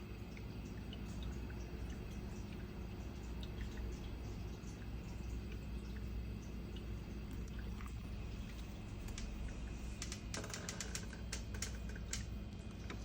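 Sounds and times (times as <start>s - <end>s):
coffee maker humming: 0.0s - 13.0s
small clicks and pops: 8.5s - 9.4s, 10.0s - 13.0s.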